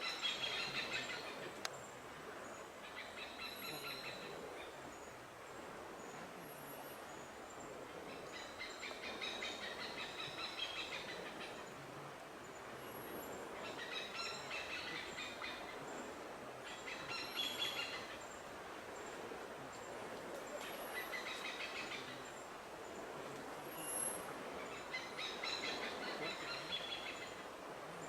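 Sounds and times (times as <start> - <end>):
steady background hiss: 0.0 - 28.0.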